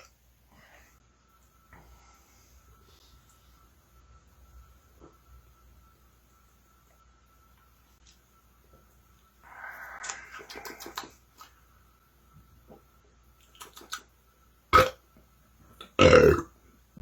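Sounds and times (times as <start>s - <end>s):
man belching: 14.8s - 15.0s, 16.0s - 16.5s.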